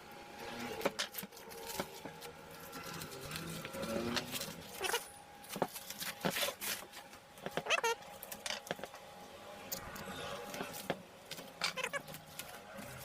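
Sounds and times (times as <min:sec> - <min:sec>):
packaging crinkling and rustling: 0:00.9 - 0:07.4, 0:10.5 - 0:13.0.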